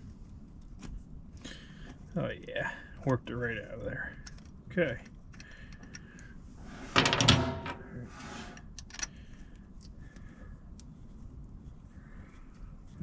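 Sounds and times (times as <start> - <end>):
metal clattering: 6.7 - 8.6.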